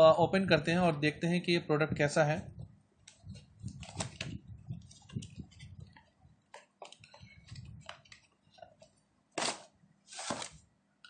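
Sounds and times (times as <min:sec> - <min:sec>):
small clicks taps and rustles: 0:03.0 - 0:09.0
cardboard box being opened: 0:09.4 - 0:10.6.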